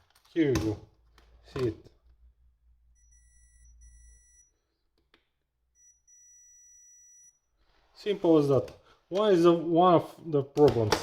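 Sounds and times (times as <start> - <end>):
multimeter high beep: 2.9 - 4.6, 5.7 - 7.5.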